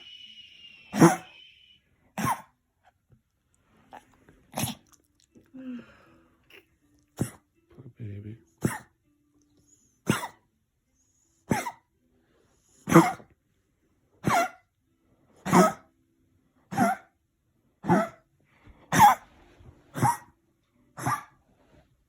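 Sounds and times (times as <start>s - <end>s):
dog coughing: 1.0s - 1.3s, 2.2s - 2.6s, 3.9s - 5.0s, 6.5s - 7.5s, 8.6s - 8.9s, 10.0s - 10.4s, 11.5s - 11.9s, 12.8s - 13.3s, 14.2s - 14.6s, 15.4s - 15.8s, 16.7s - 17.1s, 17.8s - 18.2s, 18.9s - 19.2s, 20.0s - 20.3s, 21.0s - 21.3s.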